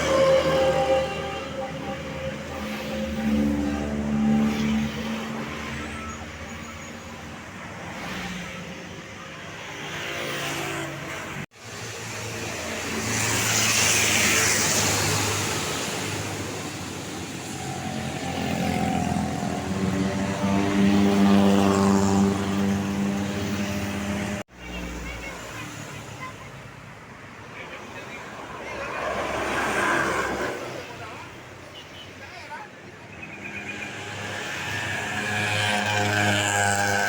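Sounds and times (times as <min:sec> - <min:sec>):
buses passing on road: 0:00.0 - 0:37.0.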